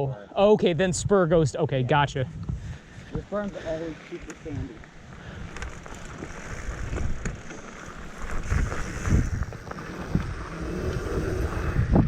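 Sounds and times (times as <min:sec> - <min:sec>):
wind buffeting microphone: 0:00.4 - 0:12.0
bike rattling over bumps: 0:02.6 - 0:12.0
tyres rolling over loose ground: 0:03.5 - 0:11.9.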